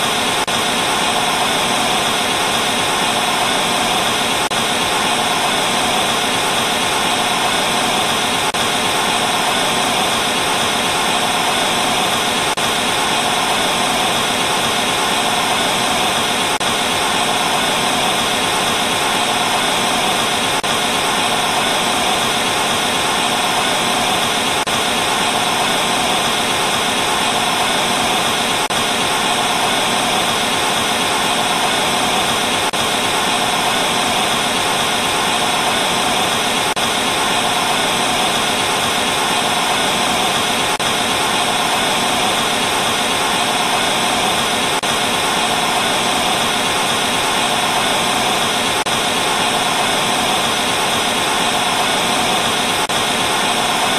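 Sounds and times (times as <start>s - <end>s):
tv static white noise hiss: 0.0s - 53.9s.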